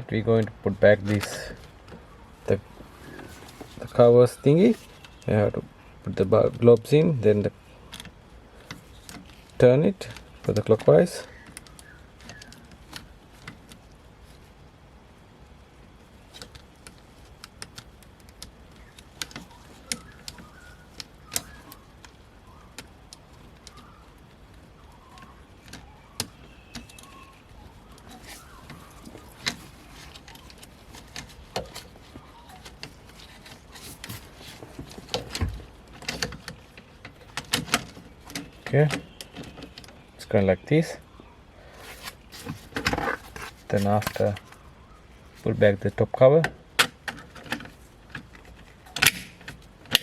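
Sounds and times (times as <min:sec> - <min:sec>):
faint bird chirps: 0:11.2 - 0:12.7, 0:18.7 - 0:35.5, 0:38.0 - 0:42.6, 0:43.8 - 0:45.7
plastic parts clicking: 0:46.4 - 0:50.0.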